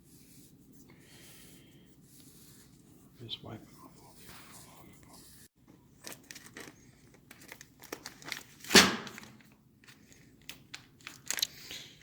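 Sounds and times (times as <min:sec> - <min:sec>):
crinkling and rustling: 0:05.6 - 0:12.0.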